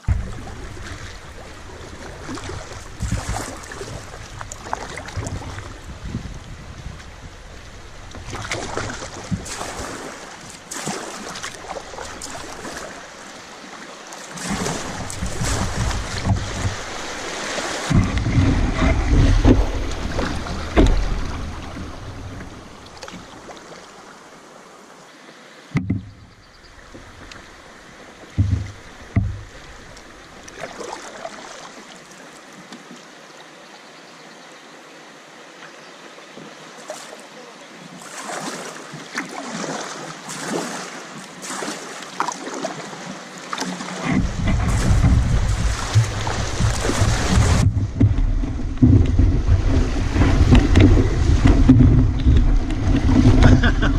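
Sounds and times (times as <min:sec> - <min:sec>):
low rumbles: 0:00.0 - 0:09.4, 0:17.9 - 0:23.0, 0:44.1 - 0:53.9
paddle strokes and splashing water: 0:00.0 - 0:53.9
dull thumps: 0:14.9 - 0:17.0, 0:17.8 - 0:23.2, 0:28.3 - 0:29.6, 0:44.1 - 0:53.9.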